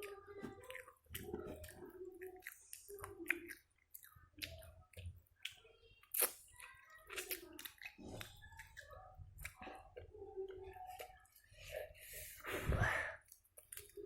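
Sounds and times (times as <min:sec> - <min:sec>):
close chewing: 0:00.0 - 0:12.4, 0:13.2 - 0:14.0
wet mouth clicks: 0:00.8 - 0:08.8.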